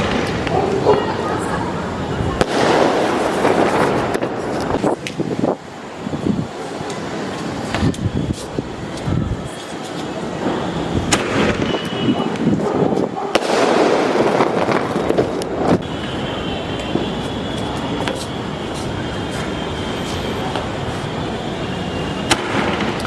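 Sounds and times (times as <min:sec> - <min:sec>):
fireworks pops and bangs: 0:00.0 - 0:01.2, 0:02.4 - 0:05.2, 0:06.9 - 0:09.1, 0:09.9 - 0:16.2, 0:16.8 - 0:21.1, 0:22.2 - 0:23.0.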